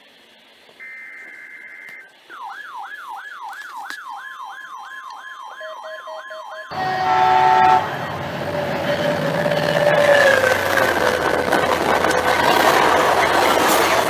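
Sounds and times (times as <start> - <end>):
electronic yelp siren: 0.8 - 14.0
steady electronic tone: 5.8 - 14.0
harsh multi-pitch horn sound: 6.3 - 14.0.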